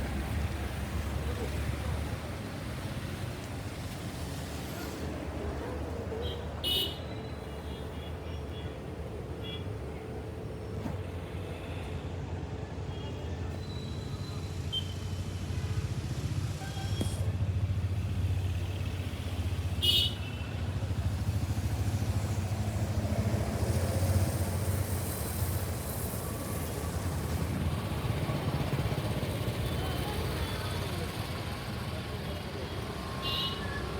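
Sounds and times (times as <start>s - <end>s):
road vehicle rumble: 0.0s - 33.9s.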